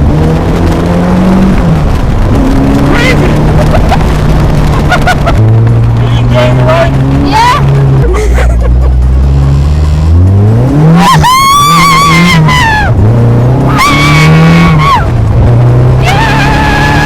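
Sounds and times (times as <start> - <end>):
car engine accelerating hard: 0.0 - 17.0
tyres squealing: 13.6 - 15.1.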